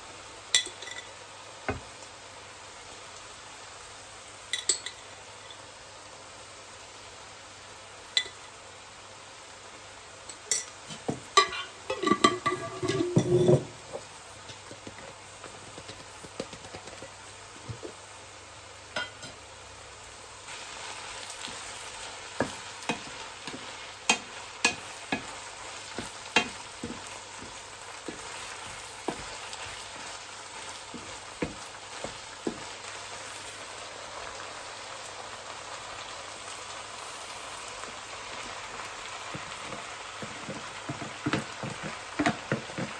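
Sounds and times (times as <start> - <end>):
food sizzling in a pan: 0.0 - 42.9
utensil clinking against cookware: 10.4 - 13.9, 19.0 - 19.4, 22.4 - 25.4, 26.0 - 27.5, 39.3 - 42.9.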